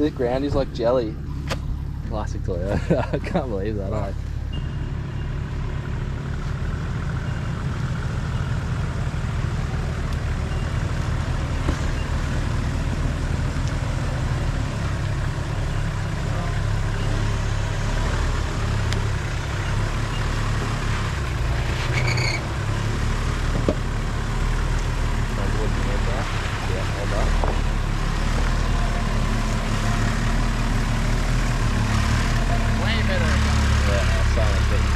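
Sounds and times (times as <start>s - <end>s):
diesel engine idling: 0.0s - 34.9s
brief high squeak: 21.8s - 22.5s.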